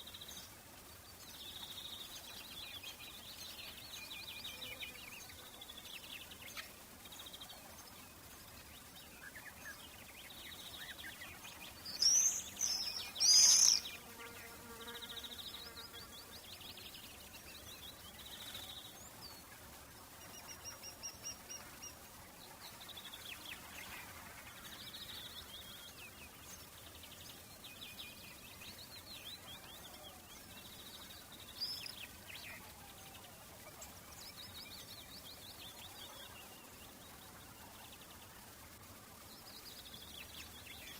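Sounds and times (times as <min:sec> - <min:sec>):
birds chirping and singing: 0:00.0 - 0:14.1.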